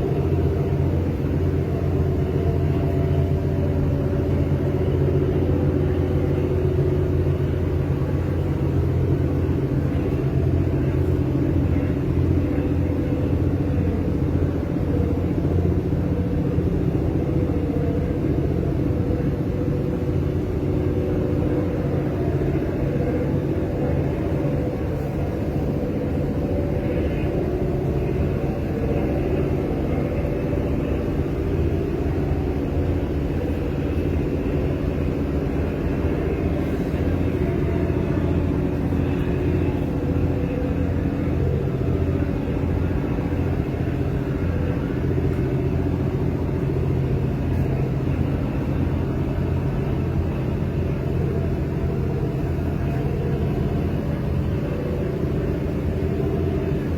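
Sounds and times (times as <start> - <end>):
low engine rumble: 0.0 - 56.9.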